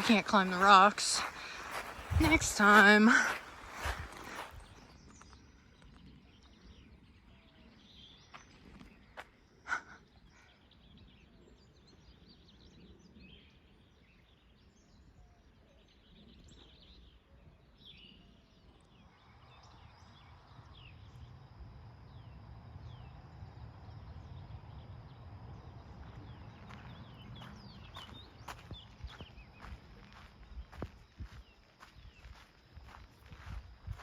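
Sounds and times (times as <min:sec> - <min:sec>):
bird chirps: 0:23.9 - 0:34.0.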